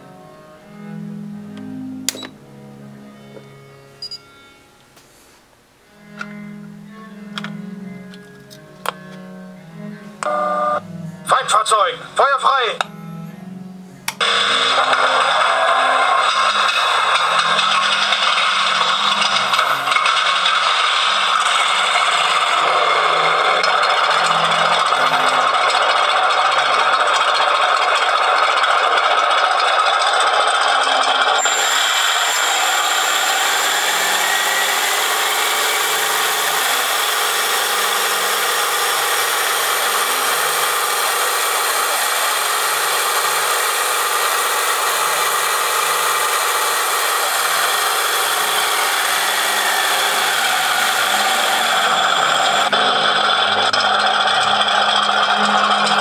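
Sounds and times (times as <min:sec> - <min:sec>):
tank engine sound through small speaker: 0:06.2 - 0:56.0
gear motors and tracks rattling: 0:14.1 - 0:56.0.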